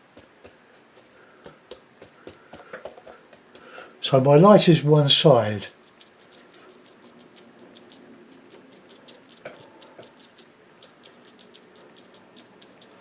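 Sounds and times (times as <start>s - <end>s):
brush tapping on paper: 0.0s - 3.9s.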